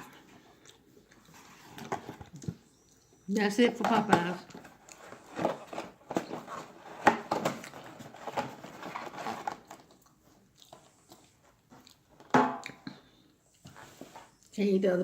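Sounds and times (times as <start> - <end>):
chewing and wet mouth smacks: 0.5 - 1.4, 9.9 - 12.0.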